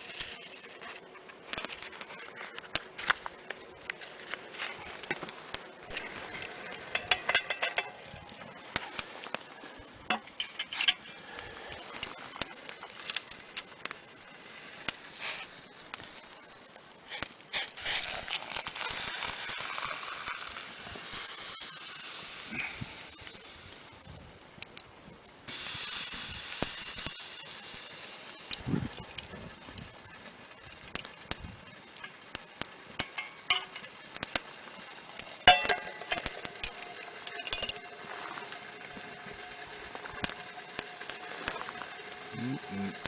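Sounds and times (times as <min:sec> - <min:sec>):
clicks and handling noises: 0:00.0 - 0:14.0, 0:35.2 - 0:38.6
steady hiss: 0:00.0 - 0:43.0.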